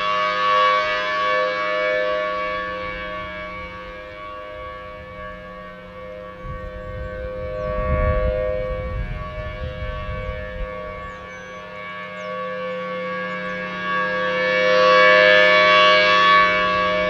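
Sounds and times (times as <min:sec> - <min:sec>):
rotating warning siren: 0:00.0 - 0:17.0
low rumble: 0:02.6 - 0:11.4.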